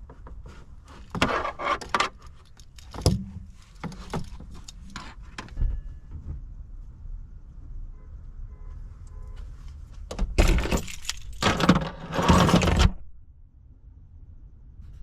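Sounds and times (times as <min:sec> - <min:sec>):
metallic clattering and jangling: 0:01.0 - 0:06.0, 0:10.1 - 0:12.9.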